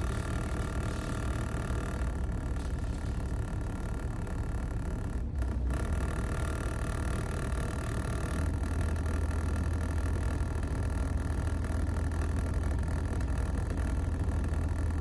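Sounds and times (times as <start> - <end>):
ship engine rumbling: 0.0 - 6.9
faint steady hum: 0.0 - 15.0.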